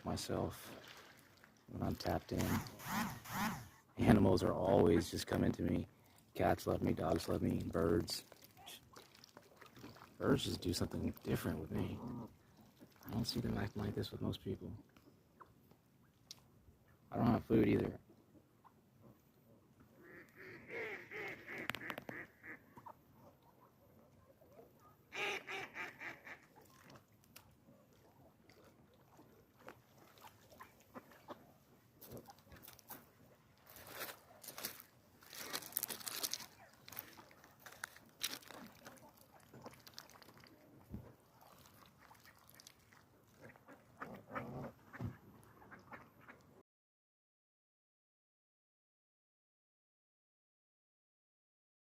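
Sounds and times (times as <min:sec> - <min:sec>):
soft duck sounds: 0:19.9 - 0:23.7, 0:41.0 - 0:46.6
duck quacking: 0:20.0 - 0:22.9, 0:25.1 - 0:26.5
faint clicks and crunches: 0:32.0 - 0:40.5.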